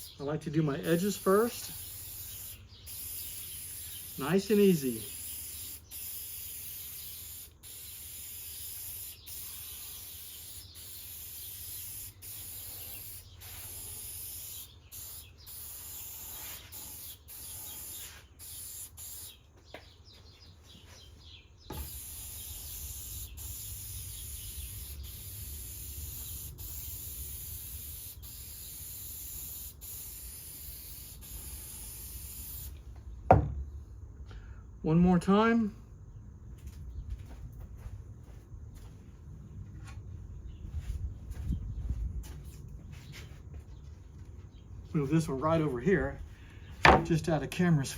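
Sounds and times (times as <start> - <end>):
spray hissing: 0.0 - 19.4, 21.7 - 32.8.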